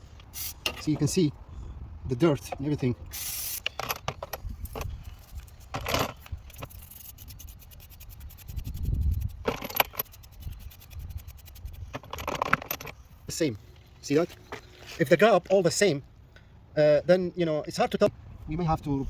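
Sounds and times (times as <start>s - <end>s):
metal parts clinking and scraping: 0.2s - 1.1s, 2.4s - 13.2s.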